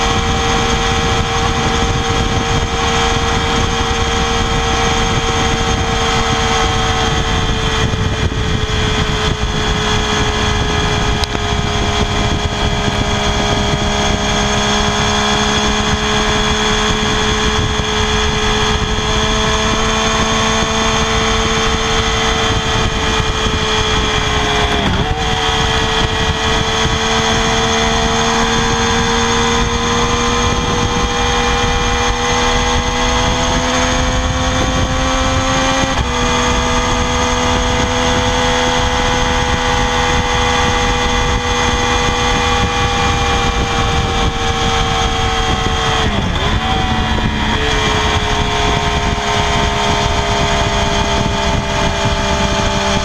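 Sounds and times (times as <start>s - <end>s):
motorcycle engine at high revs: 0.0s - 53.0s.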